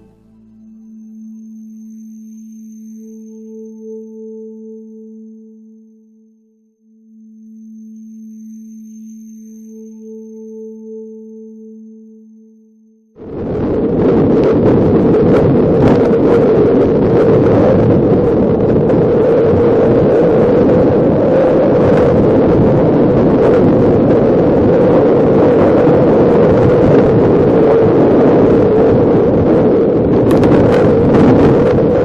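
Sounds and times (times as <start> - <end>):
loud steady wind: 0.0 - 6.0, 13.1 - 32.0.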